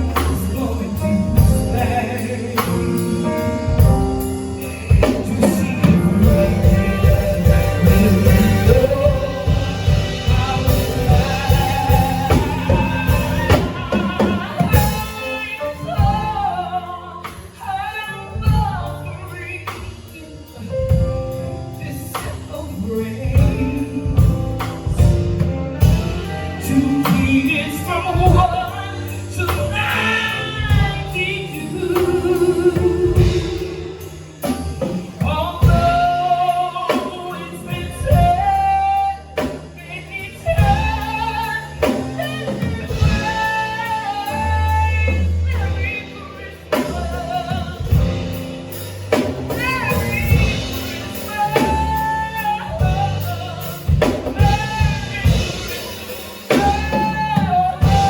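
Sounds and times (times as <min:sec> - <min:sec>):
gospel singing: 0:00.0 - 0:58.0
instrumental accompaniment with beat: 0:00.0 - 0:58.0.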